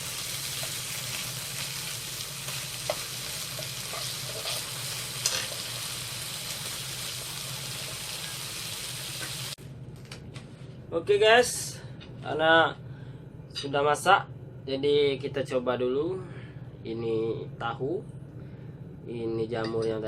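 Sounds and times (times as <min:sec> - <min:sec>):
food sizzling in a frying pan: 0:00.0 - 0:09.6.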